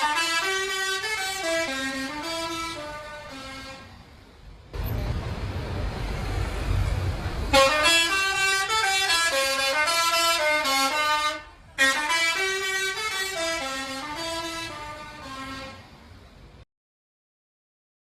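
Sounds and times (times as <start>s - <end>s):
bus air horns playing tune: 0.0s - 4.1s, 7.5s - 16.1s
low rumbling noise: 2.7s - 9.3s.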